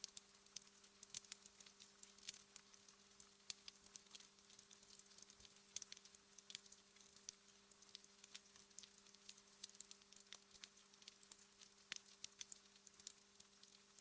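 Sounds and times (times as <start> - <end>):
wood fire crackling: 0.0 - 14.0.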